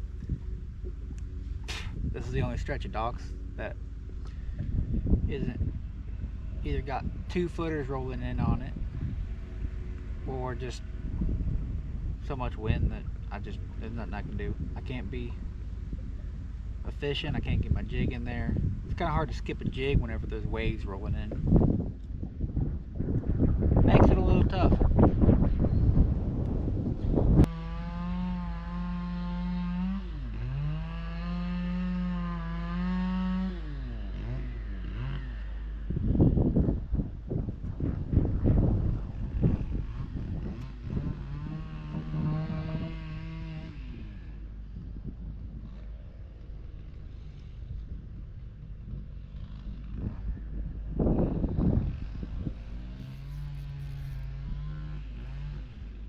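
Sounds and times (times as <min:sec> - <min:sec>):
wind noise: 0:00.0 - 0:29.0, 0:34.2 - 0:56.0
low motor hum: 0:00.0 - 0:56.0
motor humming: 0:49.9 - 0:56.0.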